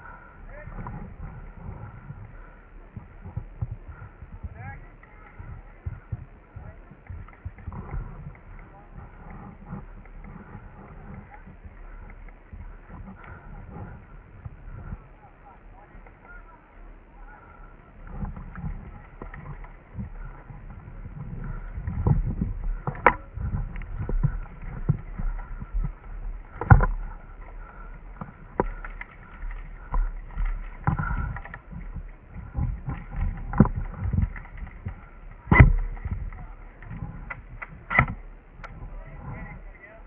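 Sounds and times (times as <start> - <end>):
muffled thuds and rustling: 18.0 - 39.5.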